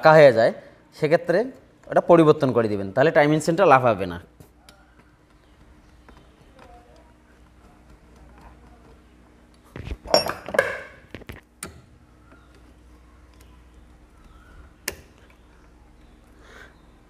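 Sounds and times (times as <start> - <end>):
metal engine parts clinking: 10.1 - 10.9.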